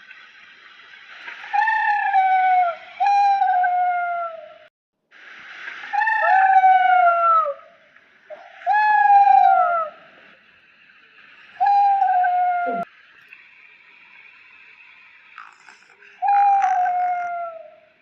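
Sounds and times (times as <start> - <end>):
steady hiss: 5.1 - 18.0
high whistly creature calls: 11.6 - 12.9, 15.4 - 17.9.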